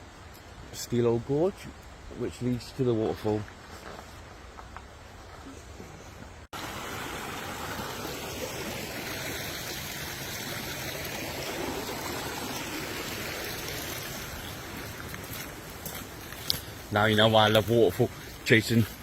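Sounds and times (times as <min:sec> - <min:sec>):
fast-flowing water rushing: 0:06.6 - 0:19.0.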